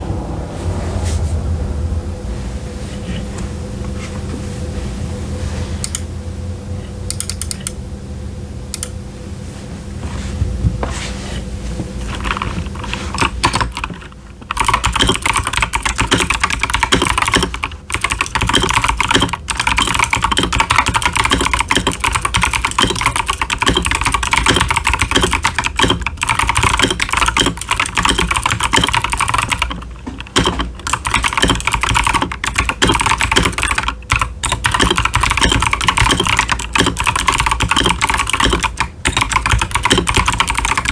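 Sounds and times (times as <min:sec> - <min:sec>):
typing on mechanical keyboard: 0:12.1 - 0:40.9.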